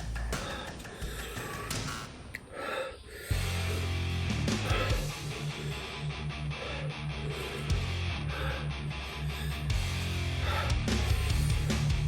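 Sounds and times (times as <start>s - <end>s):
guitar music with bass line: 3.4s - 12.0s.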